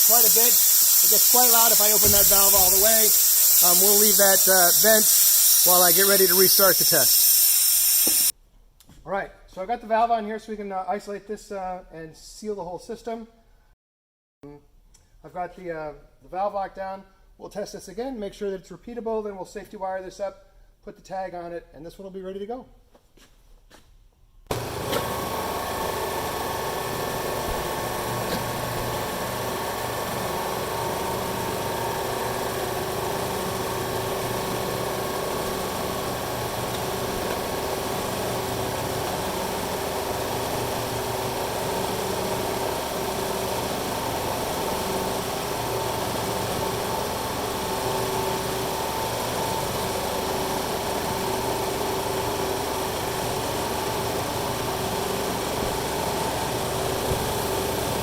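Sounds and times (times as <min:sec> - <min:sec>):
pump motor humming and whining: 0:00.0 - 0:08.3, 0:24.5 - 0:58.0.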